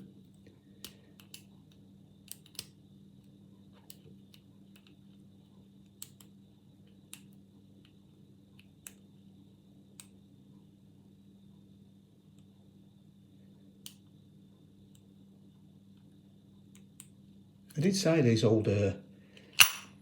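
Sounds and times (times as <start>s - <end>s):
lock pick clicking in padlock: 19.5s - 19.9s.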